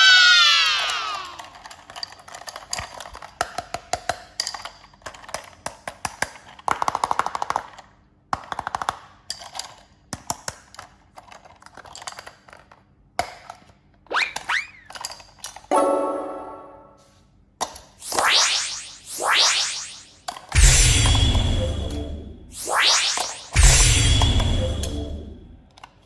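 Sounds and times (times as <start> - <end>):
plastic toy pieces clicking: 0.3 - 15.7
whistle-like tone: 18.0 - 20.2.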